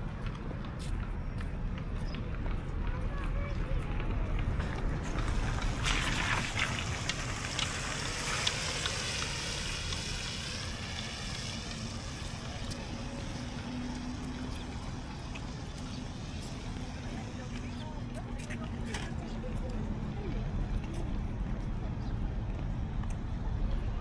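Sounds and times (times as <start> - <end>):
low engine hum: 0.0 - 24.0
wind rumbling on microphone: 0.0 - 24.0
tyres hissing on wet road: 4.9 - 18.1.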